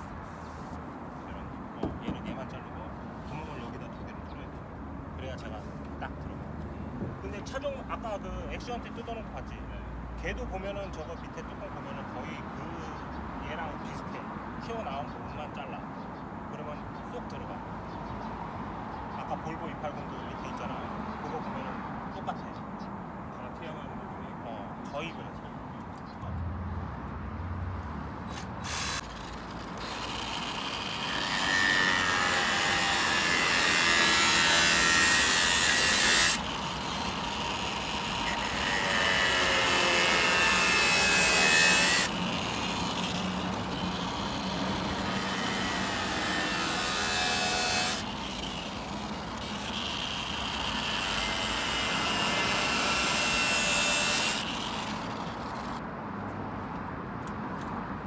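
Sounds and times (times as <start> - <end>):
power saw cutting: 28.3 - 55.8.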